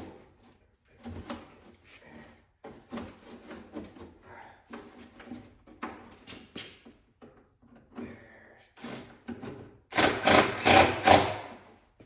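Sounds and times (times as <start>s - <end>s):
fasteners being tightened: 8.8s - 11.6s.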